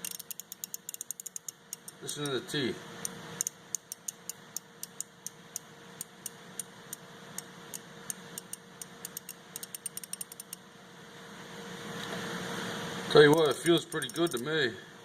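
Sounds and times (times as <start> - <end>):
ratchet clicking: 0.0 - 2.4, 3.0 - 10.6, 13.5 - 14.5.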